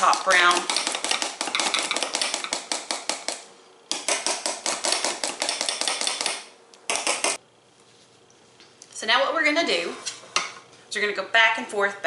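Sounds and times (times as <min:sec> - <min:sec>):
utensil beating batter in bowl: 0:00.0 - 0:07.4.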